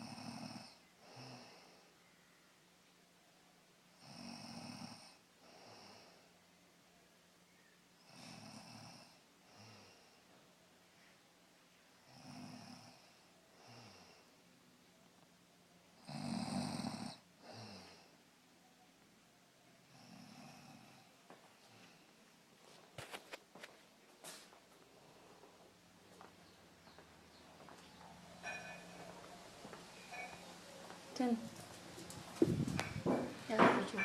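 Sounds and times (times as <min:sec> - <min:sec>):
woman snoring: 0:00.0 - 0:01.8, 0:04.0 - 0:06.2, 0:08.0 - 0:10.2, 0:12.0 - 0:14.3, 0:16.0 - 0:18.2, 0:19.8 - 0:22.0.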